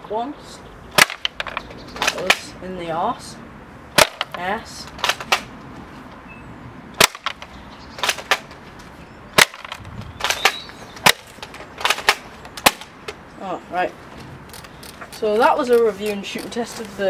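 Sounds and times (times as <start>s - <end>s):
airsoft rifle cocked and fired: 7.0s - 8.6s, 9.4s - 13.0s.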